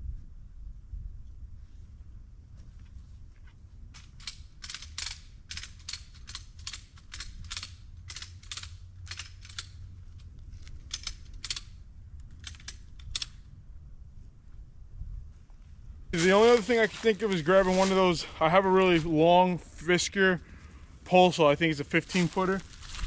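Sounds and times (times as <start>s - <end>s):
footsteps crunching dry leaves: 16.2s - 19.4s, 21.4s - 23.0s.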